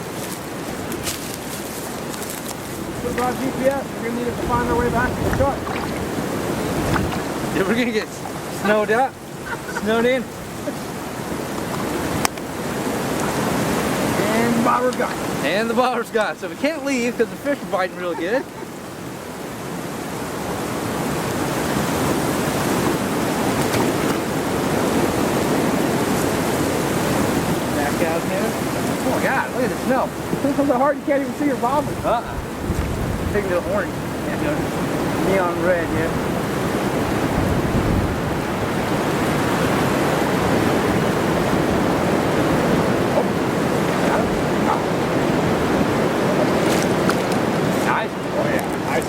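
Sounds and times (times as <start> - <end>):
blizzard wind on microphone: 2.6 - 14.6, 31.6 - 49.0.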